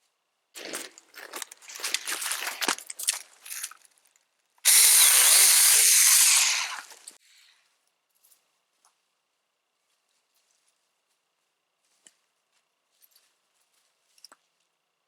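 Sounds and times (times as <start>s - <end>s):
dry wood crackling and snapping: 0.6s - 4.1s
mini chainsaw cutting: 4.6s - 7.2s.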